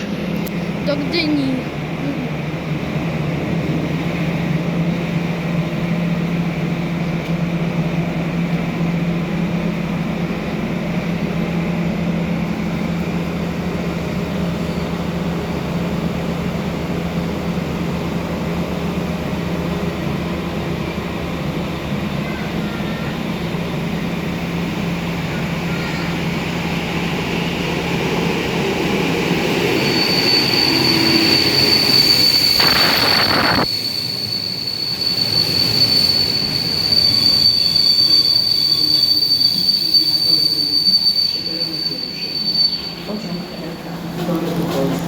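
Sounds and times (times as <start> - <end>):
passenger train running past: 0.0 - 45.0.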